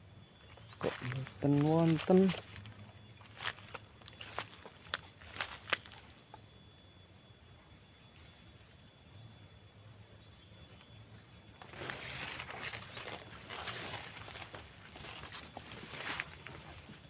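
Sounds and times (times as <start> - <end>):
insects droning: 0.0 - 17.0
footsteps through dry leaves: 0.8 - 6.0, 11.7 - 16.7.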